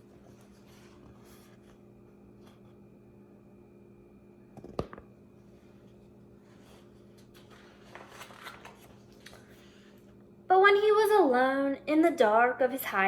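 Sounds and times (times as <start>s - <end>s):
faint high whine: 0.0s - 8.2s
low electrical hum: 0.0s - 13.0s.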